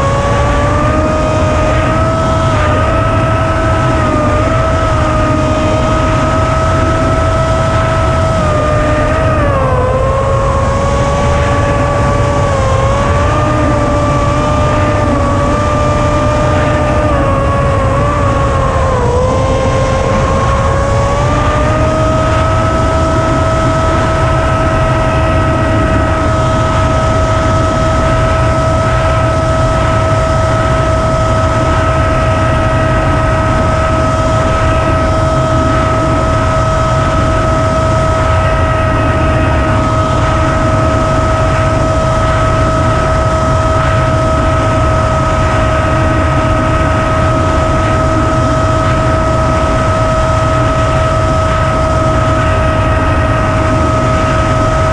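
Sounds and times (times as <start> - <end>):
electric motor and propeller whining: 0.0 - 54.9
wind rush over microphone: 0.0 - 54.9.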